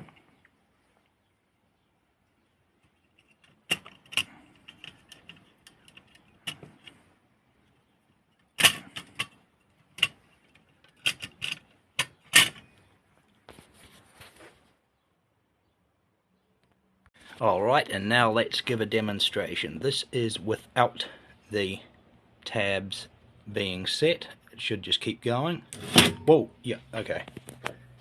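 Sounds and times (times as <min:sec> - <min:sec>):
typewriter parts clicking and rattling: 0:03.1 - 0:07.0, 0:08.6 - 0:12.6
soft rustle: 0:12.8 - 0:14.8.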